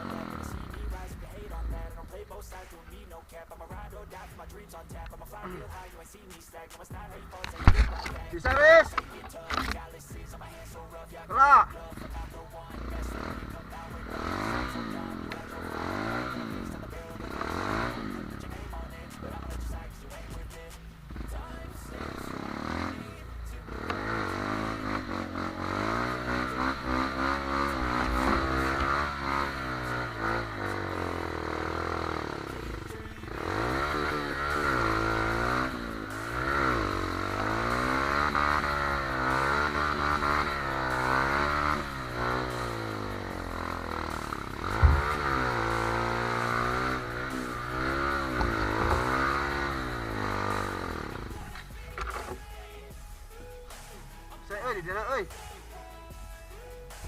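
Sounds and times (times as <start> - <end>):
motorcycle engine revving: 0.0 - 56.2
sharp knock: 44.8 - 45.3.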